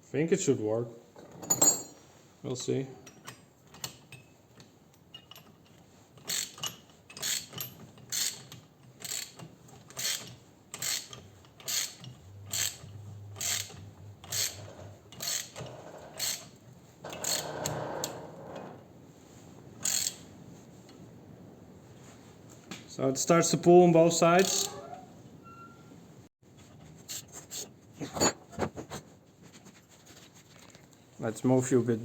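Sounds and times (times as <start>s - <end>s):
ratchet wrench clicking: 6.2s - 16.5s, 19.8s - 20.2s
metal parts scraping: 6.2s - 18.8s.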